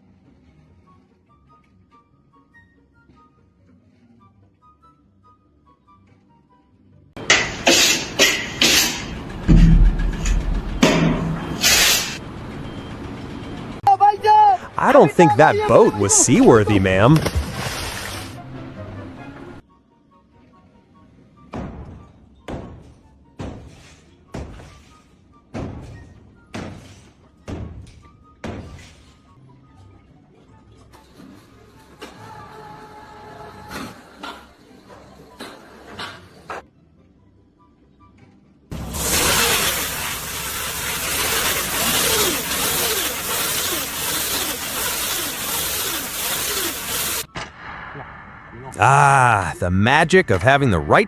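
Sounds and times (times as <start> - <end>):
faint background music: 0.0 - 7.2, 13.9 - 38.7
heavy thuds: 9.2 - 11.6
loud steady hiss: 38.8 - 47.3.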